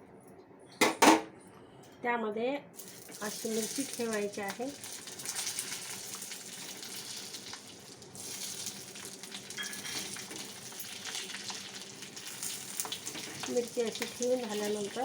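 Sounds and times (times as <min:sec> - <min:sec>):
vegetables sizzling in hot oil: 0:02.8 - 0:15.0.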